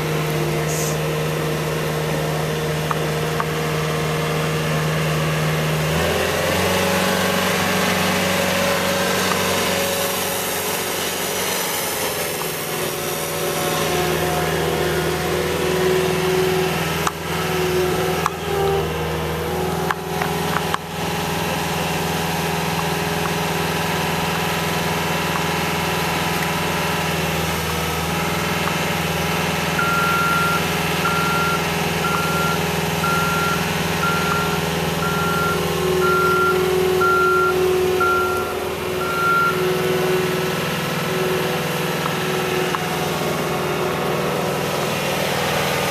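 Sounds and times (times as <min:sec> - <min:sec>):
diesel engine running: 0:00.0 - 0:45.9
reversing alarm beeping: 0:29.7 - 0:40.6.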